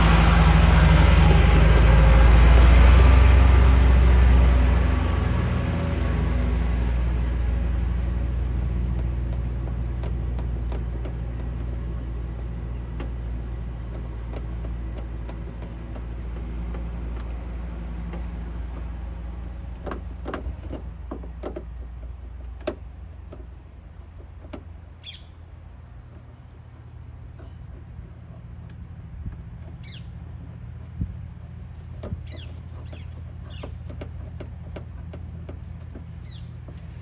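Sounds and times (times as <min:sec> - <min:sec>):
low engine rumble: 0:00.0 - 0:37.0.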